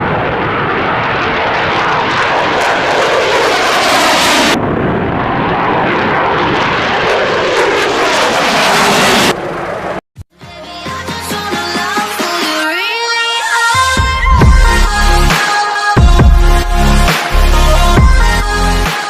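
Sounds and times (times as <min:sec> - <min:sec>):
aircraft engine noise: 0:00.0 - 0:10.0.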